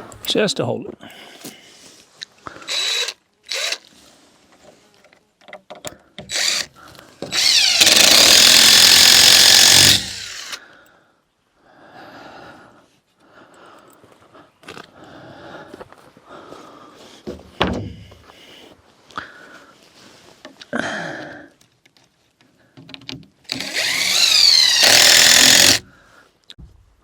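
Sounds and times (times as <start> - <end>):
power drill driving screw into wood: 2.7 - 3.8, 6.3 - 10.6, 23.5 - 25.8.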